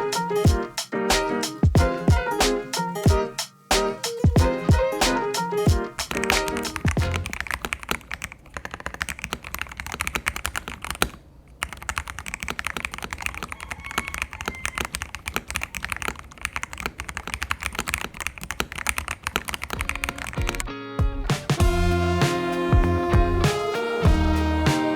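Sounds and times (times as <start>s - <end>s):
mechanical keyboard typing: 6.2s - 20.6s.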